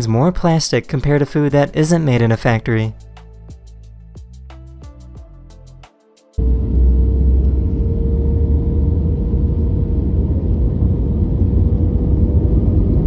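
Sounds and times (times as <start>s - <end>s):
loud low engine rumble: 6.4s - 13.0s
mid-pitched hum: 6.4s - 13.0s.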